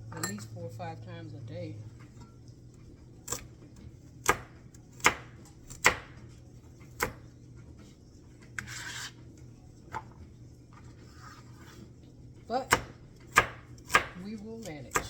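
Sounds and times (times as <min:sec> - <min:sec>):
knife chopping on cutting board: 0:04.2 - 0:06.2, 0:06.9 - 0:07.3, 0:12.6 - 0:15.0
knife scraping: 0:08.4 - 0:09.4, 0:10.8 - 0:12.0.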